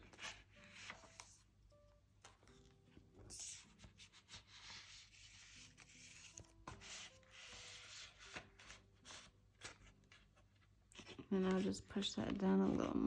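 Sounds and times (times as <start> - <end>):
paper and cardboard rubbing: 3.3 - 13.0.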